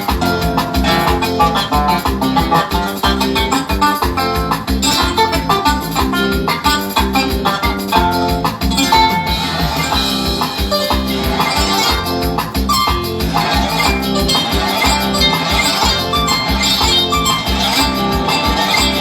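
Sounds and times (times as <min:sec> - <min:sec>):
latin dance music: 0:00.0 - 0:19.0.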